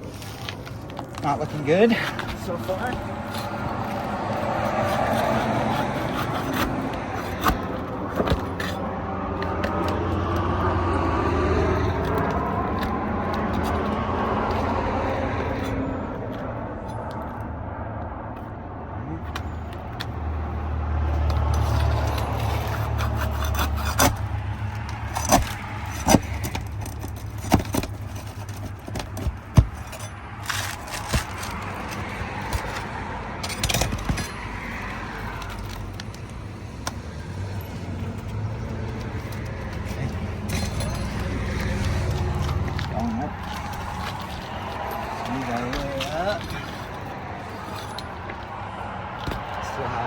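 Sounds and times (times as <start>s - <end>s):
metal tool scraping shingles: 0.0s - 10.0s, 21.2s - 35.8s
sharp clicks and knocks: 21.2s - 37.0s.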